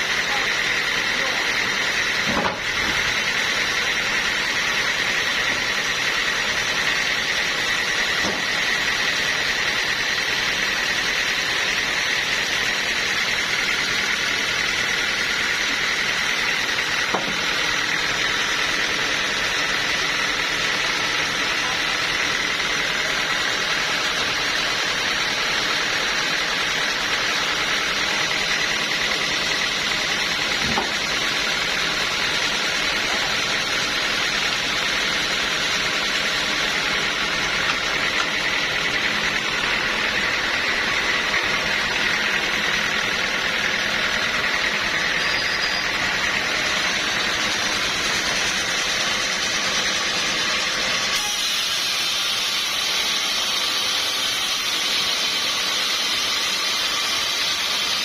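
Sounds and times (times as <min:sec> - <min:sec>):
sawmill saw whining: 0:00.0 - 0:58.0.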